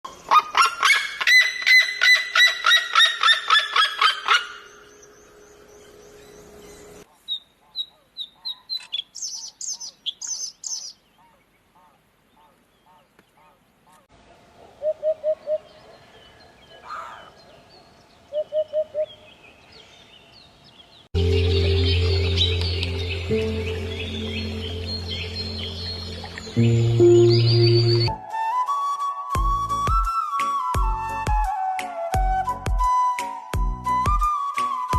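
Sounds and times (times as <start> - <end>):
bird chirping: 0.1 - 13.5, 14.2 - 28.2
music with sustained low notes: 21.2 - 28.8.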